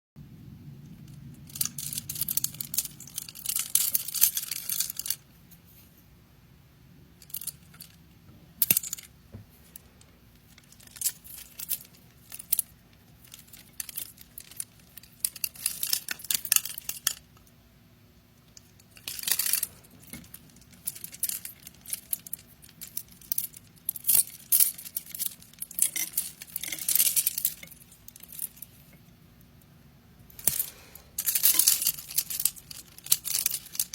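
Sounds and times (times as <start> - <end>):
resin jewellery clicking and clinking: 0.8 - 5.2, 9.7 - 17.5, 18.5 - 29.7, 30.3 - 33.9
crinkling rustles: 1.0 - 6.1, 18.5 - 29.2, 30.3 - 33.9.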